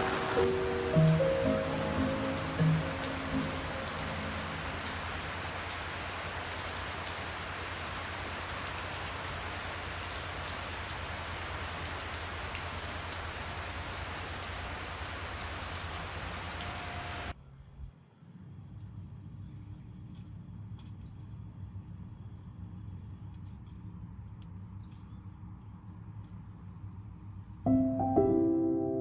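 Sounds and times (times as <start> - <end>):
steady rain falling: 0.0 - 17.4.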